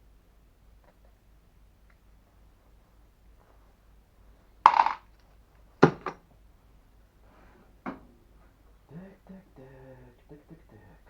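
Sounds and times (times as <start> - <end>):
metal parts clinking on hard surface: 4.7 - 5.0.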